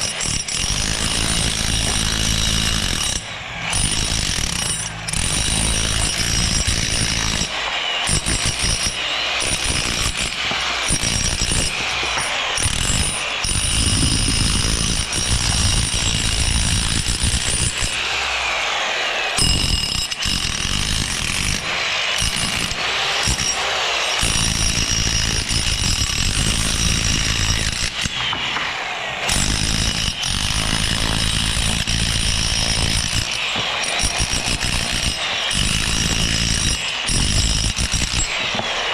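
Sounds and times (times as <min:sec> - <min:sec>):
power tool and machinery noise: 0:00.0 - 0:38.9.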